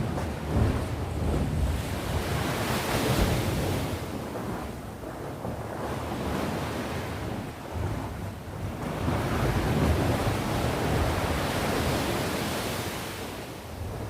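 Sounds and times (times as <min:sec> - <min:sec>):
sea waves breaking on shore: 0:00.0 - 0:14.0
wind rumbling on microphone: 0:00.0 - 0:14.0.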